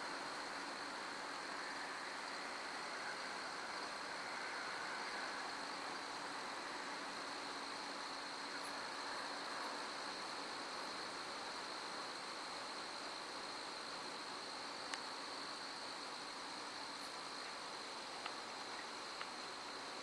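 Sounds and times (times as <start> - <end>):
crickets chirping: 0.0 - 20.0
faint hiss: 0.0 - 20.0.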